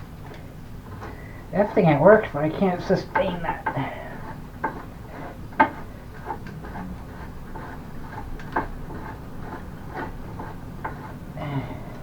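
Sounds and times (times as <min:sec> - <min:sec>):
hand tools knocking and clicking: 0:04.6 - 0:04.9, 0:05.5 - 0:05.8.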